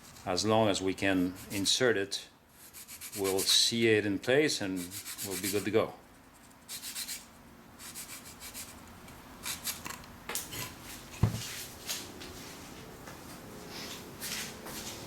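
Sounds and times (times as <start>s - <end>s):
sanding wood: 2.6s - 3.6s, 4.8s - 5.7s, 6.7s - 7.2s, 7.8s - 8.8s.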